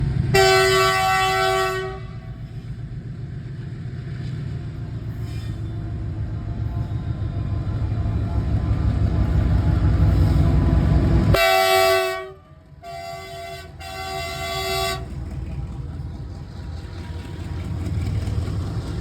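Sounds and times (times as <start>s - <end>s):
diesel engines rumbling: 0.0s - 19.0s
locomotive horn blast: 0.3s - 2.4s, 11.3s - 15.8s.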